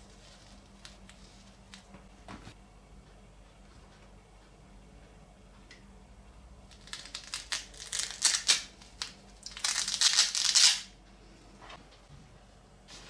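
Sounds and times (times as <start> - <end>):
wrapping crinkling: 6.7 - 10.9.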